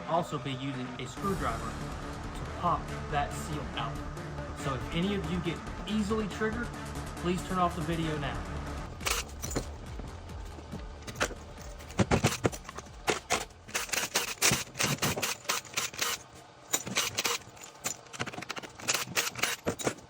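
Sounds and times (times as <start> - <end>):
metal scraping: 8.8 - 20.0.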